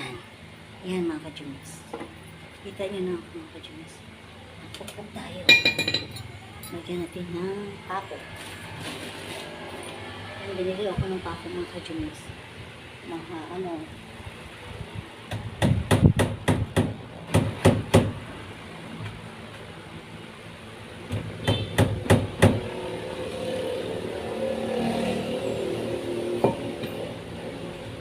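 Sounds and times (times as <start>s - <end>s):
hammer hitting nail: 15.3s - 18.2s, 21.1s - 22.6s.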